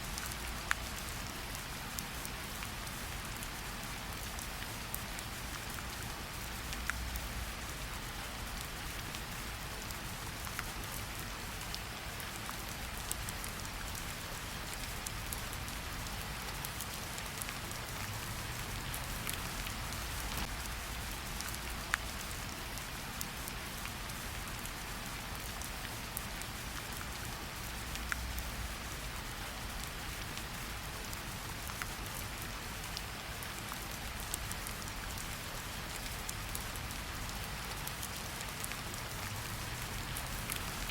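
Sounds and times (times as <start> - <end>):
steady rain falling: 0.0 - 40.9
fireplace crackles and pops: 18.9 - 22.0.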